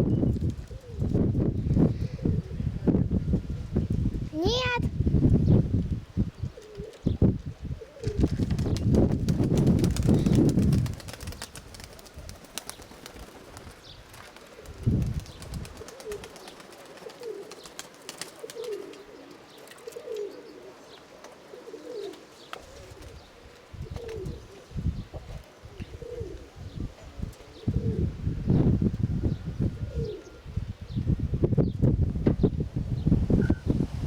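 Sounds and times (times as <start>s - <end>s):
wind rumbling on microphone: 0.0s - 16.4s, 22.6s - 34.0s
pigeons cooing: 0.6s - 1.2s, 1.9s - 2.7s, 6.5s - 7.2s, 7.8s - 8.4s, 9.8s - 28.2s, 29.6s - 30.5s.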